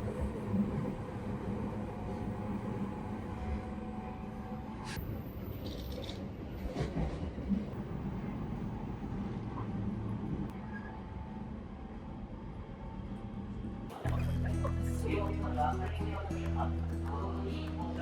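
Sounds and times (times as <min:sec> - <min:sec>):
train rumbling: 0:00.0 - 0:14.0.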